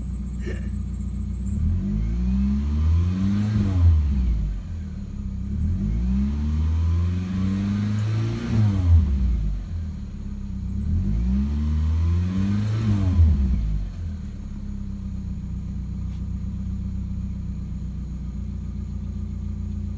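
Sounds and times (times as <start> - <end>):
car engine idling: 0.0 - 2.3, 4.1 - 6.0, 9.2 - 11.1, 13.2 - 19.9
car engine revving: 1.3 - 16.2.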